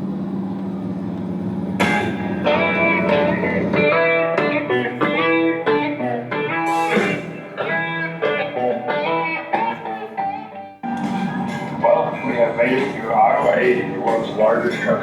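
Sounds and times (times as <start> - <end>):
blues electric guitar music on speakers: 1.8 - 13.2.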